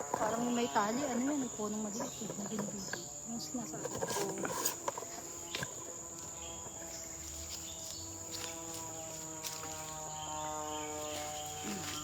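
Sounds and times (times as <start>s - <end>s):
insects droning: 0.0s - 12.0s.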